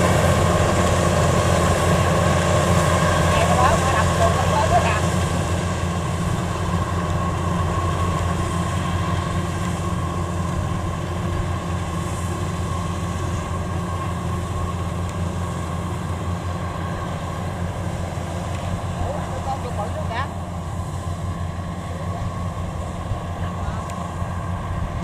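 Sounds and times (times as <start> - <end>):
diesel engine drone: 0.0 - 25.0
machinery whine: 0.0 - 25.0.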